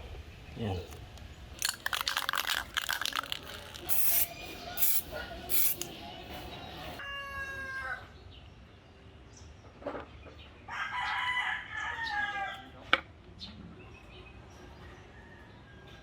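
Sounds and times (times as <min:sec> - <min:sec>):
rooster crowing: 0:07.0 - 0:08.1, 0:10.7 - 0:12.7.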